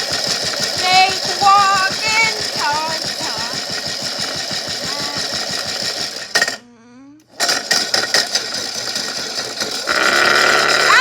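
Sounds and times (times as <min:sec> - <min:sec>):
rock knocking in toy washing machine: 0:00.0 - 0:06.6.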